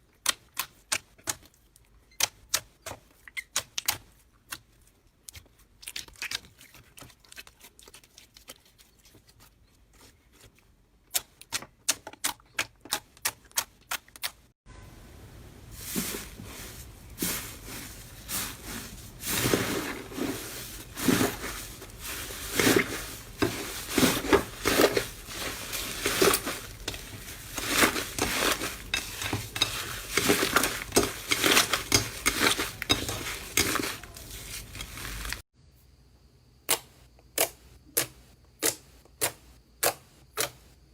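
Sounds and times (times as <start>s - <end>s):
slime squelching and popping: 0.1s - 9.4s.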